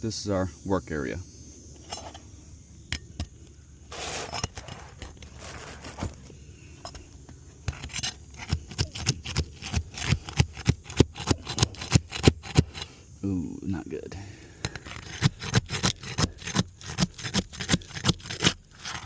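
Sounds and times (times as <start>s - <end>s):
tools scraping roof shingles: 3.9s - 13.0s, 14.6s - 19.0s.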